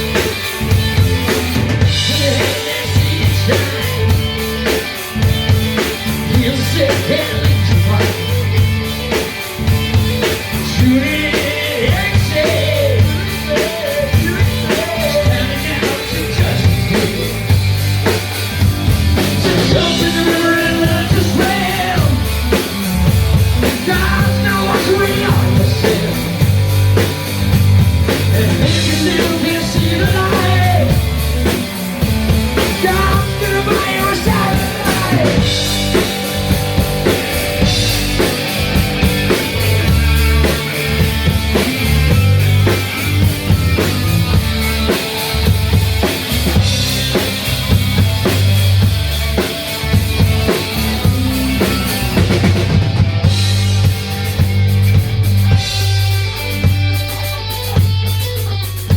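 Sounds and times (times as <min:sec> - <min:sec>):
drum kit beat: 0:00.0 - 0:58.9
person singing: 0:02.0 - 0:04.2, 0:10.6 - 0:17.4, 0:19.4 - 0:22.3, 0:23.6 - 0:26.4, 0:28.3 - 0:31.2, 0:32.6 - 0:36.0.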